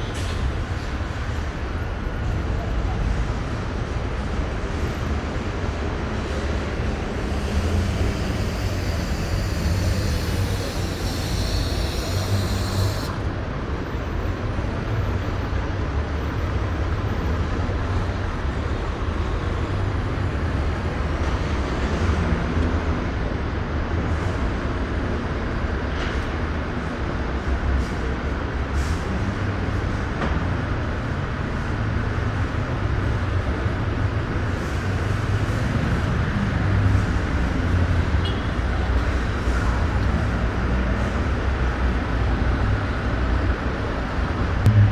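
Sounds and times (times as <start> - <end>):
road traffic rumble: 0.0 - 21.0, 31.4 - 44.9
high hiss: 6.3 - 13.4.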